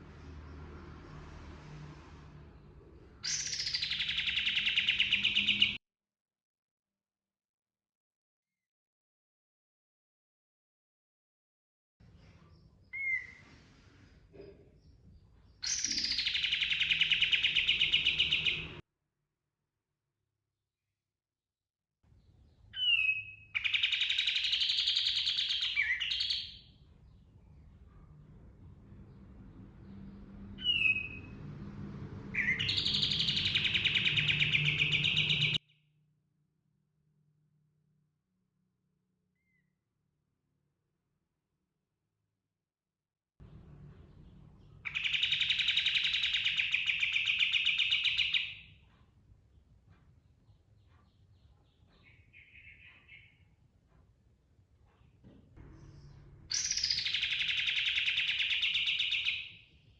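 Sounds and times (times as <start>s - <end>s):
songbird rapid rolling trill: 32.3s - 35.6s.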